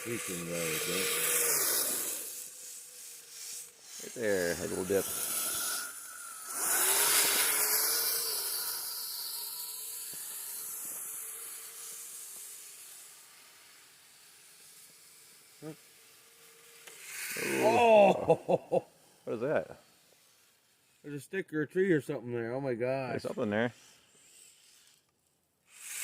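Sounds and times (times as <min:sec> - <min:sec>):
faint motor whine: 0:00.0 - 0:18.3.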